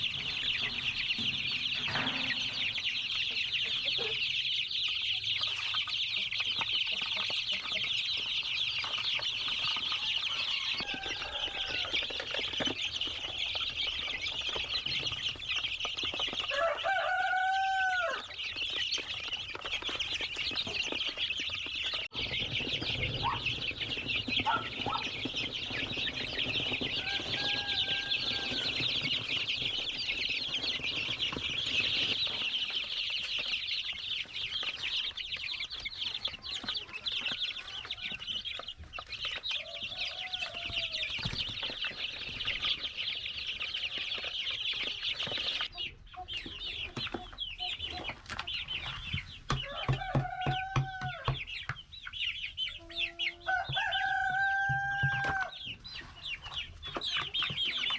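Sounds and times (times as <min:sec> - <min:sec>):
flock of chickens clucking: 0:00.0 - 0:57.9
loud single chicken calls: 0:16.5 - 0:18.2, 0:53.4 - 0:55.5.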